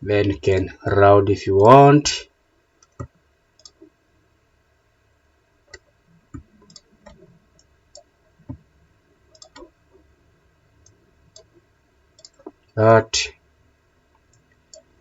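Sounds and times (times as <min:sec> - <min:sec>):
computer mouse clicking: 0:02.8 - 0:03.9, 0:05.7 - 0:08.6, 0:09.3 - 0:09.8, 0:10.8 - 0:11.5, 0:12.2 - 0:12.6, 0:14.2 - 0:14.9.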